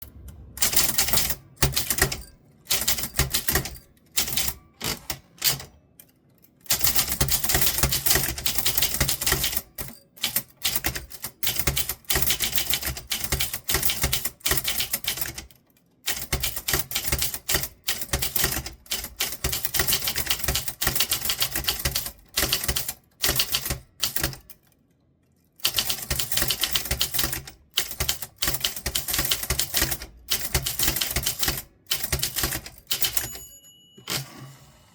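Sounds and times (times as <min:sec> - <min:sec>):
typewriter keys clacking: 0:00.0 - 0:05.7, 0:06.6 - 0:24.7, 0:25.6 - 0:34.4.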